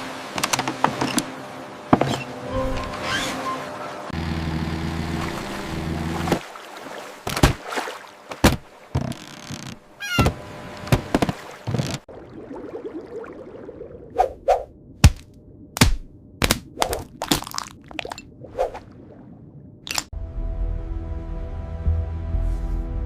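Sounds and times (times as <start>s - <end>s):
low engine-like hum: 0.0s - 6.6s
sharp knocks and cracks: 7.2s - 7.7s, 15.0s - 17.6s.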